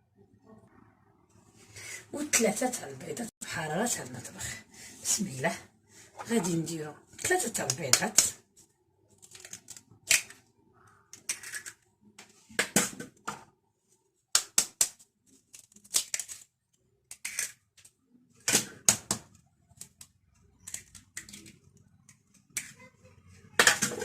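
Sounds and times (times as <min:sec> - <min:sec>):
eggs cracking against bowl: 0:09.2 - 0:11.9.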